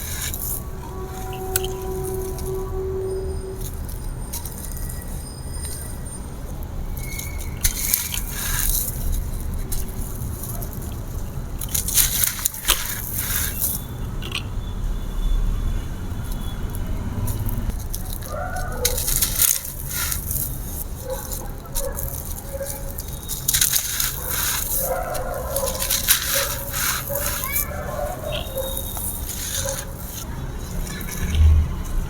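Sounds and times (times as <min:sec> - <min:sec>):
low background rumble: 0:00.0 - 0:32.0
concrete crumbling and crunching: 0:03.6 - 0:14.5, 0:17.6 - 0:32.0.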